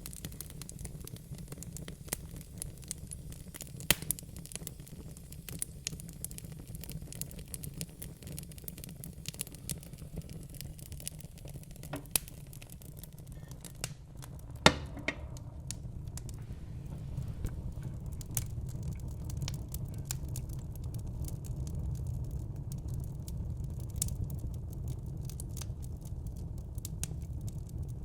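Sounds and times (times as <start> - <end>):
low rumble of flames: 0.0 - 28.0
wood crackling and popping: 0.0 - 28.0.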